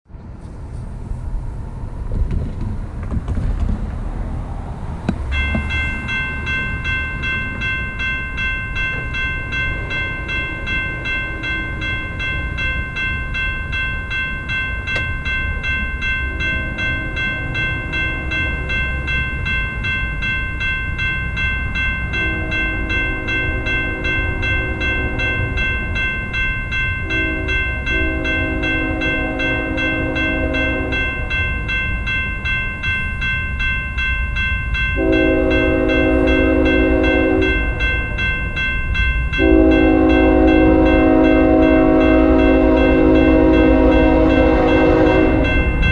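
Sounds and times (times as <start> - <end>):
freight train rumbling: 0.1 - 45.9
crossing bell ringing: 5.3 - 45.9
train horn blasts: 16.1 - 18.8, 22.1 - 25.8, 27.0 - 31.4, 35.0 - 38.0, 39.4 - 45.9.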